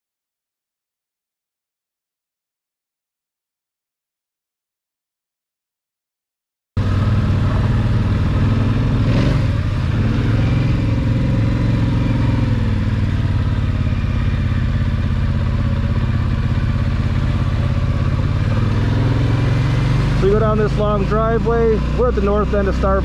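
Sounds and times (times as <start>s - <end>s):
quad bike engine running: 6.8s - 23.0s.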